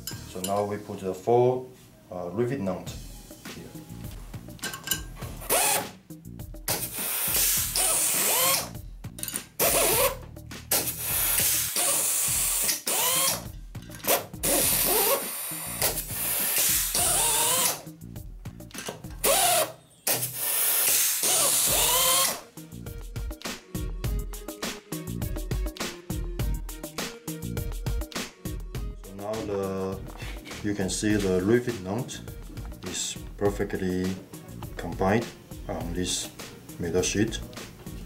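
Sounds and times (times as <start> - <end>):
air hiss: 6.7 - 8.7, 10.7 - 13.4, 14.4 - 17.8, 19.4 - 22.4.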